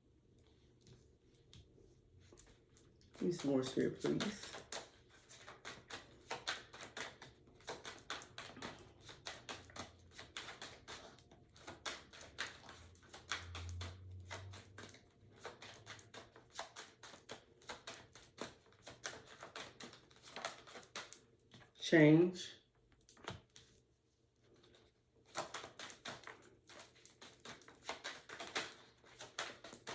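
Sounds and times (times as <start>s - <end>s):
cards being shuffled: 3.2s - 21.1s, 25.3s - 29.9s.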